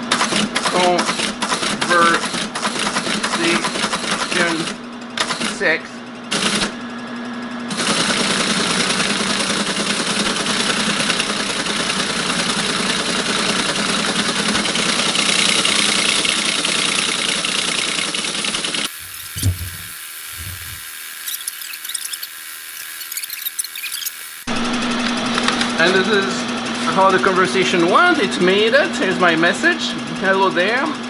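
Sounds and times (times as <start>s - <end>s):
scattered clicks: 18.9s - 24.5s.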